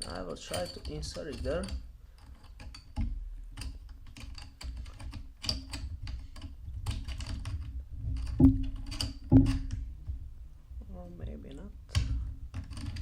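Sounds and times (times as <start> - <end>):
small metal clicks and taps: 0.0 - 9.8.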